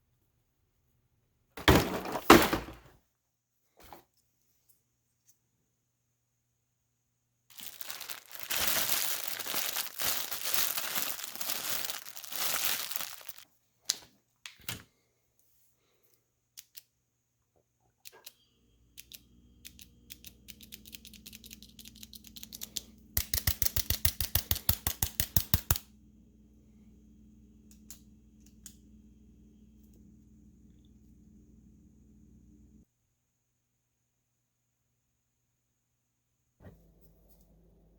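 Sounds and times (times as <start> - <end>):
crinkling and rustling: 7.5 - 14.2.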